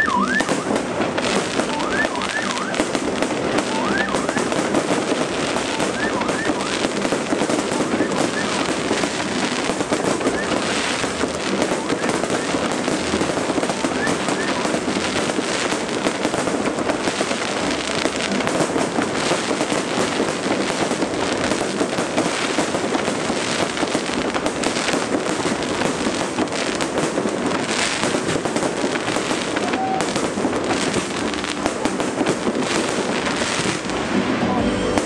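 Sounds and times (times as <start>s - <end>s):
fireworks crackling and popping: 0.0s - 35.0s.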